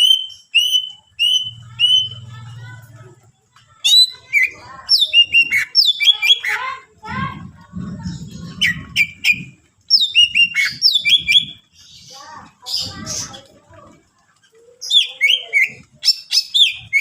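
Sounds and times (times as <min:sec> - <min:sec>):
bird singing whistled notes: 0:00.0 - 0:02.3, 0:08.6 - 0:11.6
low rumble: 0:07.0 - 0:09.8.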